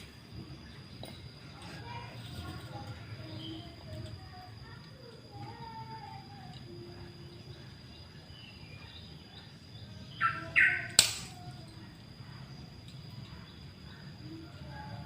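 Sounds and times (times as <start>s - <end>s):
faint bird chirps: 0.0s - 15.0s
sharp click: 10.9s - 11.4s.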